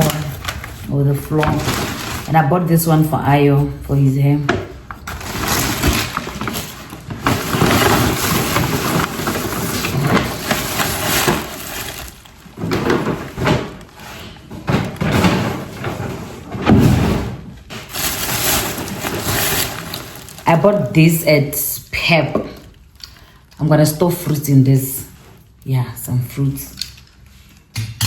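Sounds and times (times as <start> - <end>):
packaging rustling and crinkling: 0.0 - 3.8, 4.4 - 16.6, 17.6 - 21.0.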